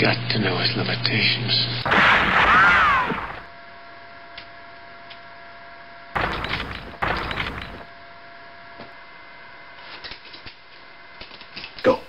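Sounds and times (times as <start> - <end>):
loud crashing sound effects: 1.8 - 3.5, 6.2 - 7.9.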